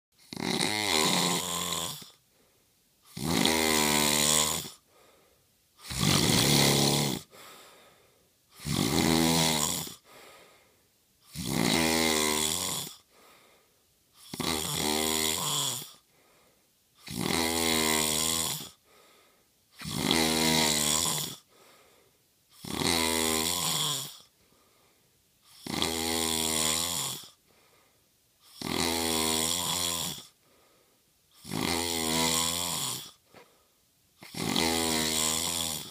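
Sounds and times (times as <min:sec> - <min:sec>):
man snoring: 0:00.2 - 0:02.2, 0:03.1 - 0:05.1, 0:05.8 - 0:07.8, 0:08.5 - 0:10.3, 0:11.3 - 0:13.4, 0:14.2 - 0:16.1, 0:17.0 - 0:19.1, 0:19.8 - 0:21.6, 0:22.6 - 0:24.4, 0:25.5 - 0:27.4, 0:28.4 - 0:30.4, 0:31.4 - 0:33.4, 0:34.2 - 0:35.9.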